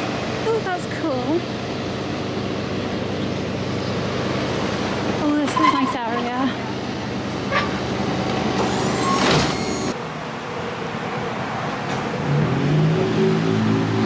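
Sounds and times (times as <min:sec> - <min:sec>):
vehicle engines humming: 0:00.0 - 0:14.0
engine speeding up: 0:12.2 - 0:14.0.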